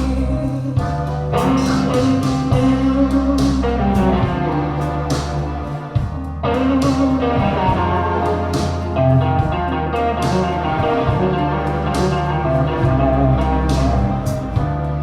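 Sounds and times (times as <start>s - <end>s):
blues song over loudspeakers: 0.0s - 15.0s
electric guitar: 0.0s - 15.0s.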